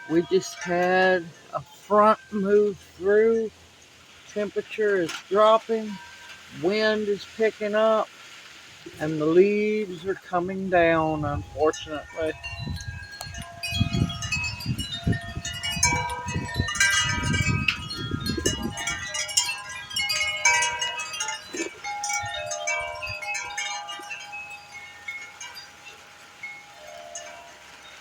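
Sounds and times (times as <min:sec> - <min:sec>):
wind chimes ringing: 0:00.0 - 0:08.1, 0:08.9 - 0:28.0
wind buffeting microphone: 0:10.7 - 0:25.6.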